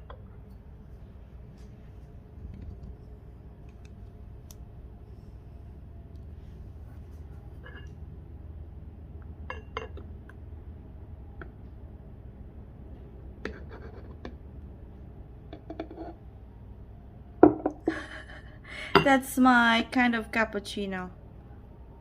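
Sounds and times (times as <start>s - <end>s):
knock on counter: 17.4s - 17.8s.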